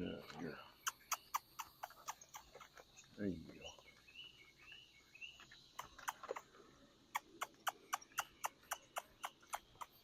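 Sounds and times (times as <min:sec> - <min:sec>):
bird chirping: 0:00.0 - 0:10.0
sharp evenly spaced clicks: 0:00.8 - 0:02.6, 0:07.2 - 0:10.0.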